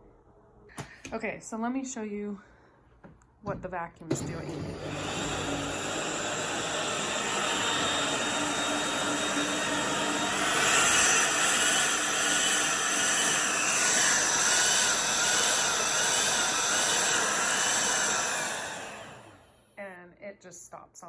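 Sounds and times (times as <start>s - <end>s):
stick vacuum whirring: 4.0s - 19.6s.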